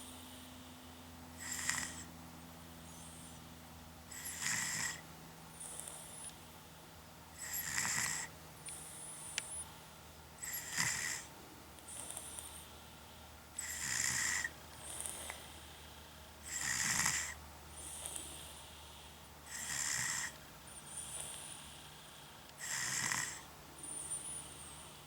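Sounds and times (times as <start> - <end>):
loud rasping snores: 1.4 - 2.1, 4.1 - 5.0, 7.4 - 8.3, 10.4 - 11.3, 13.6 - 15.3, 16.4 - 18.6, 19.5 - 25.0.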